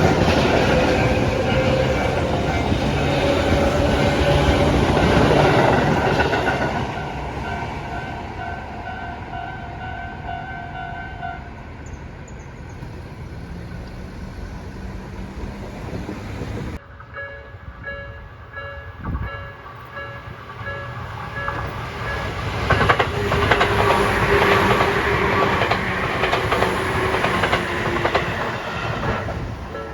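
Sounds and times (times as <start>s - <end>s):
crossing warning bell: 0.0s - 12.4s, 16.8s - 26.3s, 29.6s - 29.9s
train passing: 0.0s - 29.9s.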